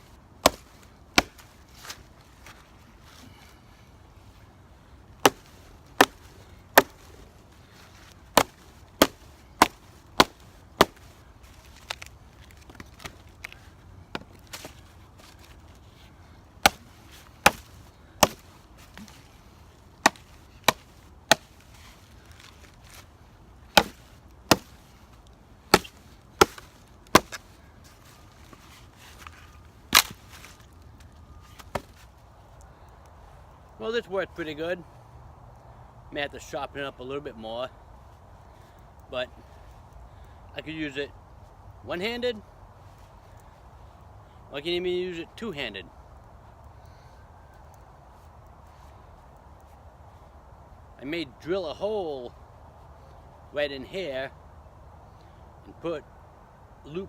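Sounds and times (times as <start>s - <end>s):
hatchet chopping log: 0.4s - 2.0s, 5.2s - 7.1s, 8.3s - 11.0s, 16.6s - 19.2s, 20.0s - 21.6s, 23.7s - 24.9s, 25.7s - 27.4s, 29.9s - 30.2s, 31.6s - 32.0s.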